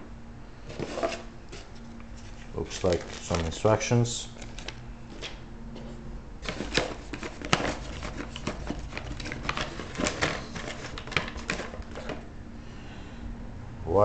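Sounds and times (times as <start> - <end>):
paper and packaging rustling: 0.7 - 12.3.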